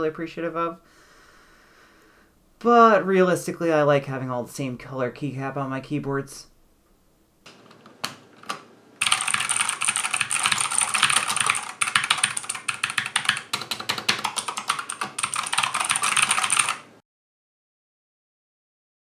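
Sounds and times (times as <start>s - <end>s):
mechanical keyboard typing: 9.0s - 16.9s.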